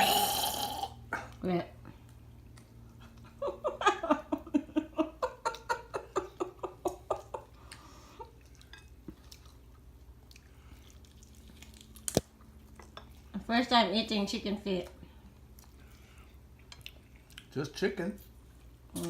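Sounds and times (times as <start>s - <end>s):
person laughing: 3.1s - 7.6s.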